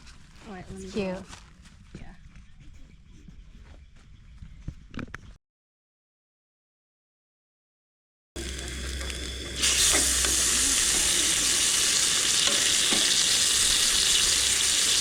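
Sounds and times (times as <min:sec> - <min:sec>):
steak sizzling in pan: 0:08.4 - 0:15.0.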